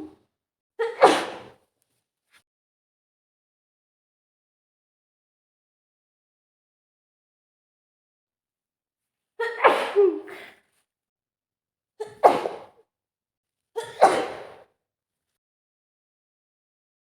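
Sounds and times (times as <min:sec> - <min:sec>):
woman sneezing: 0:00.8 - 0:01.5, 0:09.4 - 0:10.6, 0:12.0 - 0:12.7, 0:13.8 - 0:14.6.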